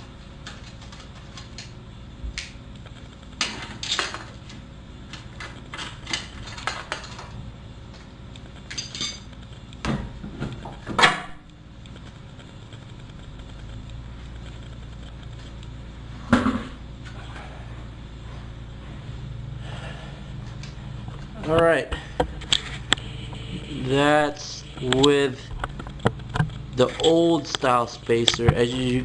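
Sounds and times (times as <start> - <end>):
metal tools clinking and clattering: 8.7 - 9.3.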